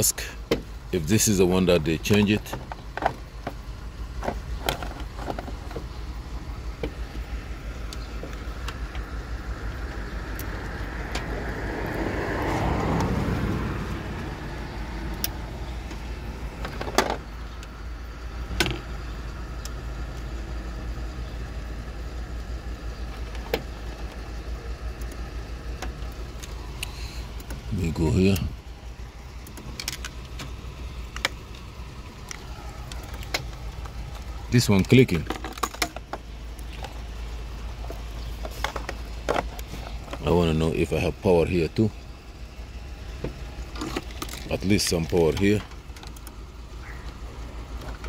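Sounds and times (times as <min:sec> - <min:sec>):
steady low rumble: 0:00.0 - 0:48.0
vehicle passing by: 0:09.0 - 0:16.6.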